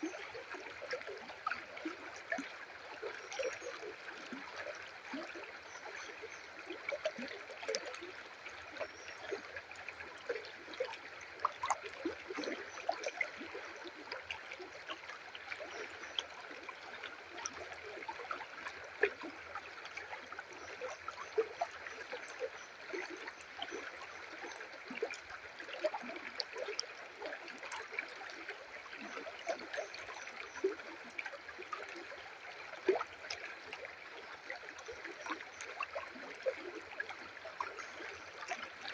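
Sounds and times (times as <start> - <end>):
stream flowing over rocks: 0.0 - 38.9.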